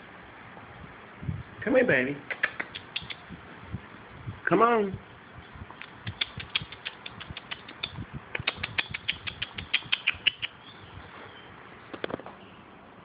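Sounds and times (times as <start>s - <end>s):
small bird chipping: 2.3s - 3.3s, 5.8s - 12.6s.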